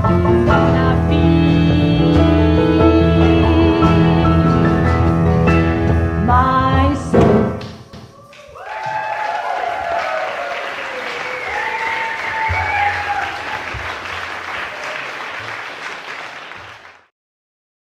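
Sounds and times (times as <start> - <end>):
people cheering: 7.8 - 17.1
audience applauding: 7.9 - 17.1.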